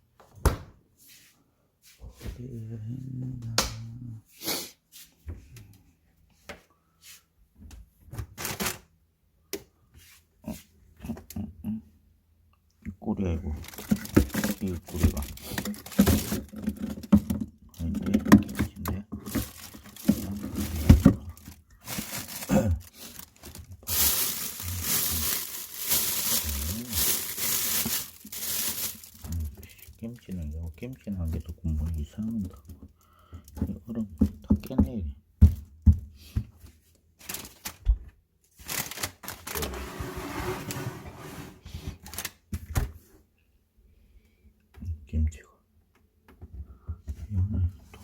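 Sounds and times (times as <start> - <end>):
plastic bags crinkling: 8.4 - 8.9, 13.6 - 30.0, 37.2 - 37.8, 38.6 - 39.8, 42.0 - 42.4
rustling: 13.6 - 17.4, 19.2 - 30.0, 37.2 - 37.8, 38.6 - 42.3
containers knocking and clattering: 13.6 - 29.5.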